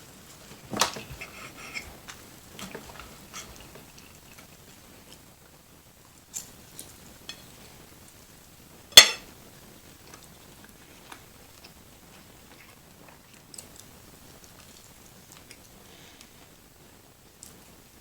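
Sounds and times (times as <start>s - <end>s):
cutlery clinking on a plate: 9.0s - 9.3s.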